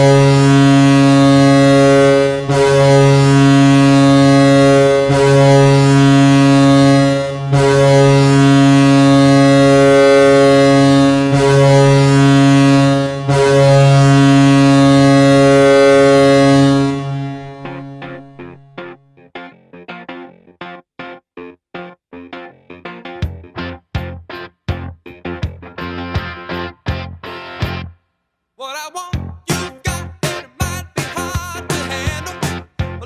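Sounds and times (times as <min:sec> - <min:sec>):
loud deep horn blasts: 0:00.0 - 0:18.6.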